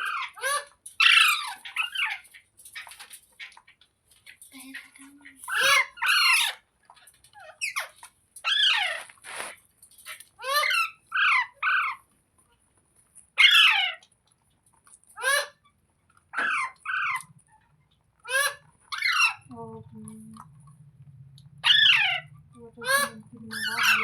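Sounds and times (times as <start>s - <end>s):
parakeet squawking: 5.3s - 6.6s, 13.4s - 14.0s, 15.2s - 15.6s, 16.4s - 17.5s, 18.2s - 19.6s, 21.6s - 24.0s.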